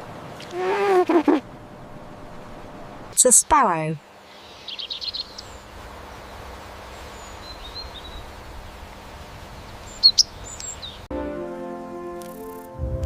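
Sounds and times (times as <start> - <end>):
outdoor background noise: 0.0 - 11.1
sparrow chirping: 4.4 - 5.7, 7.0 - 8.3, 9.7 - 11.0.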